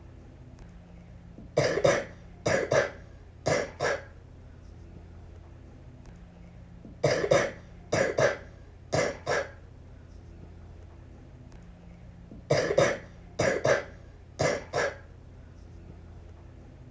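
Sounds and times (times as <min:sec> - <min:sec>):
girl coughing: 0:01.6 - 0:04.1, 0:07.0 - 0:09.6, 0:12.5 - 0:15.0.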